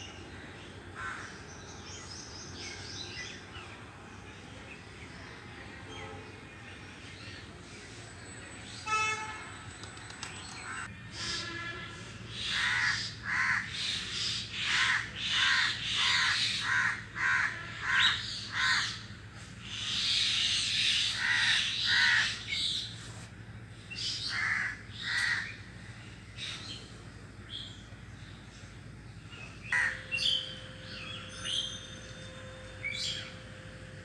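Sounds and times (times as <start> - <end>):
crow cawing: 1.0 - 1.4, 12.3 - 14.0, 14.6 - 19.0, 21.0 - 22.4, 24.2 - 25.6, 29.8 - 31.7.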